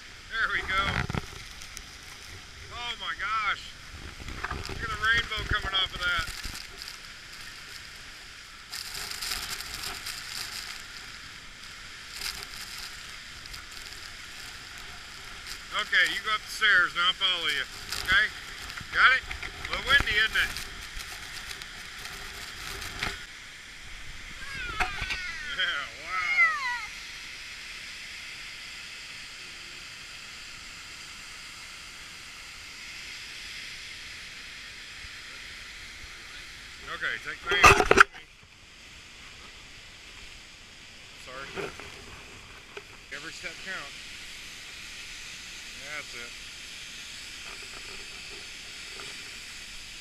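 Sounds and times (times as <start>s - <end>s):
waterfall rushing: 0.0s - 23.2s.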